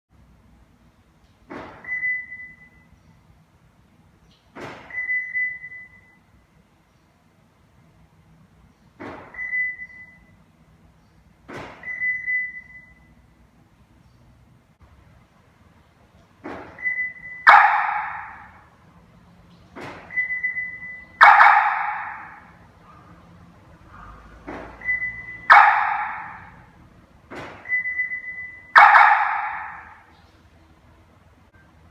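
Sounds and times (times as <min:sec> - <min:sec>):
car alarm siren sound effect: 0:16.8 - 0:18.6, 0:20.1 - 0:22.6, 0:24.8 - 0:26.7, 0:27.6 - 0:30.1.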